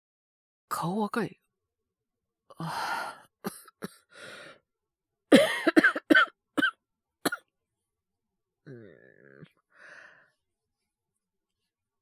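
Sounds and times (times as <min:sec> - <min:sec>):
man coughing: 0:05.3 - 0:06.7.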